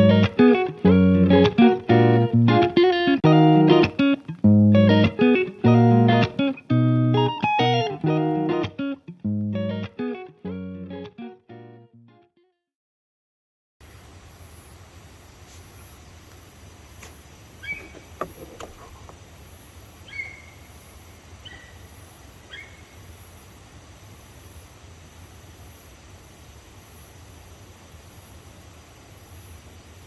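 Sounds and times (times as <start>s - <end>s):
insects chirping: 13.8s - 30.0s.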